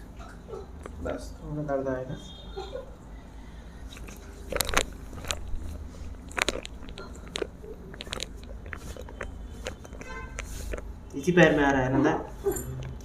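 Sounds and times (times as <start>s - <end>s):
joints cracking: 3.9s - 11.0s.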